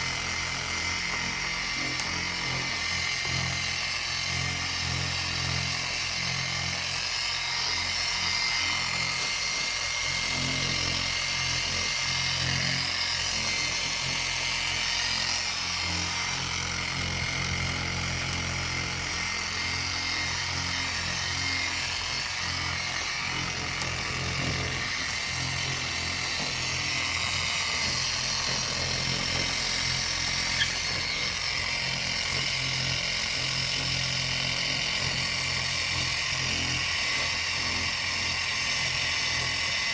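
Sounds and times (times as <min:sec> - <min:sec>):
orbital sander whirring: 0:00.0 - 0:39.9.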